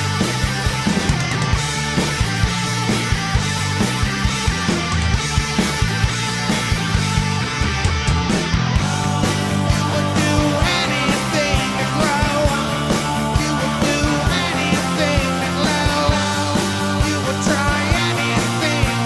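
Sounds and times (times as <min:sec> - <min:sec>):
electric guitar: 0:00.0 - 0:19.0
steady drum beat: 0:00.0 - 0:19.0.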